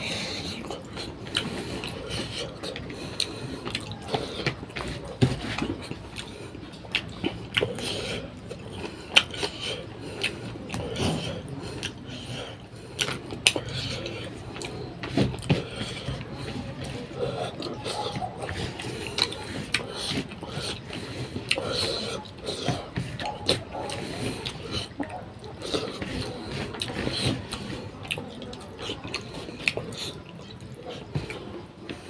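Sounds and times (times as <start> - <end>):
chewing and smacking: 0.0 - 32.0.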